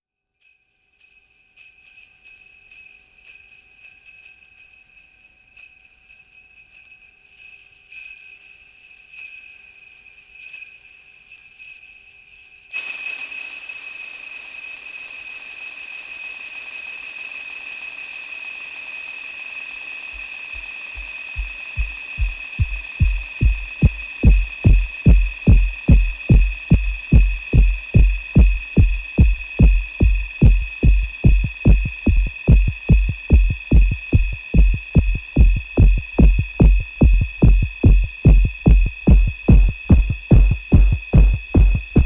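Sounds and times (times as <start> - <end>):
sleigh bells jingling: 0.4 - 14.3, 21.0 - 42.0.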